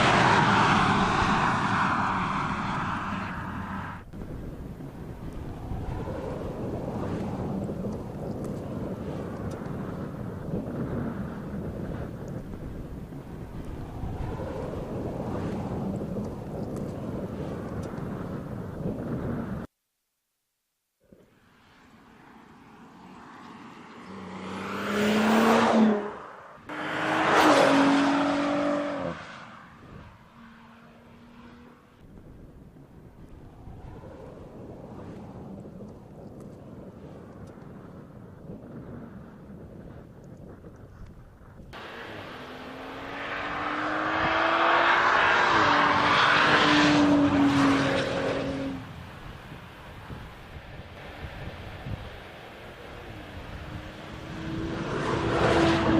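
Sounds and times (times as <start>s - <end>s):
car engine: 0.0s - 10.2s, 21.6s - 32.1s, 41.8s - 48.9s, 52.8s - 55.9s
car engine accelerating: 23.8s - 29.6s, 41.8s - 48.8s, 53.5s - 55.9s.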